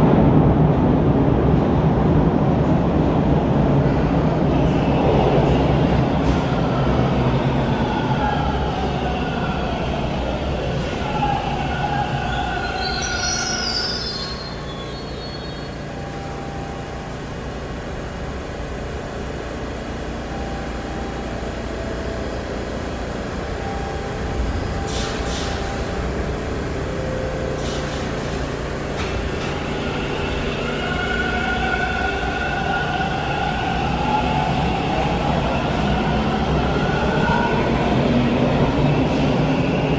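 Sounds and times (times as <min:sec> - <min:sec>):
subway train motors whining: 0:00.0 - 0:39.9
high wheel squeal: 0:04.6 - 0:16.6, 0:23.6 - 0:39.9.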